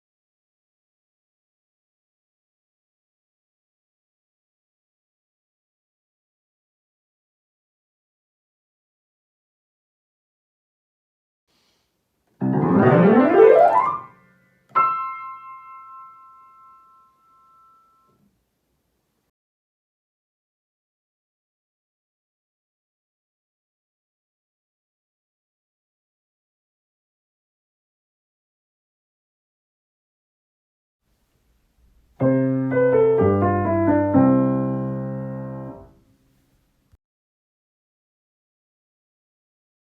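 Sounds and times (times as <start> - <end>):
piano rising glissando: 12.4 - 18.1
high piano chord ringing: 12.4 - 18.2.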